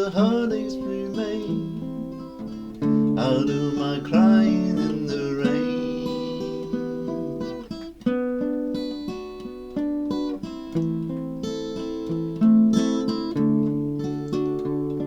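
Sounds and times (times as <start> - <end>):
acoustic guitar playing: 0.0 - 15.0.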